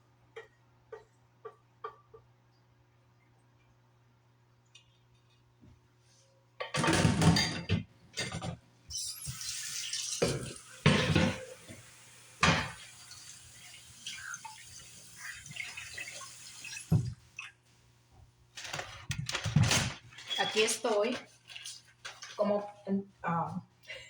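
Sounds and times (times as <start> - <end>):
dishes clinking and clattering: 6.6 - 8.6, 9.3 - 13.2
running water: 8.9 - 17.6.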